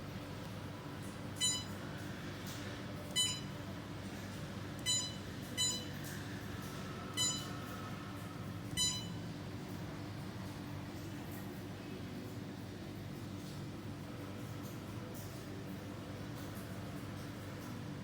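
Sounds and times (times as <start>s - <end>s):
short electronic beeps: 1.4s - 1.7s, 3.2s - 3.5s, 4.8s - 5.9s, 7.2s - 7.5s, 8.8s - 9.2s.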